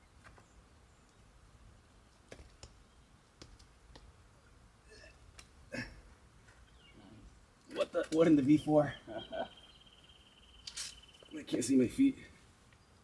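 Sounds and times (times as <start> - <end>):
hands and shoes on rock: 2.1 - 4.1.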